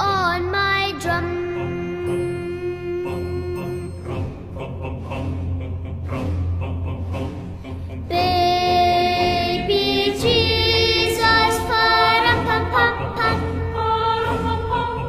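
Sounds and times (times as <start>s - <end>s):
child singing: 0.0s - 3.8s, 8.1s - 14.4s.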